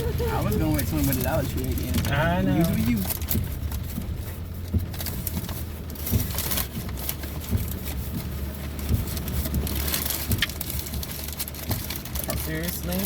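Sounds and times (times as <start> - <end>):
engine and road rumble: 0.0 - 13.0
light clicks and taps: 2.8 - 13.0.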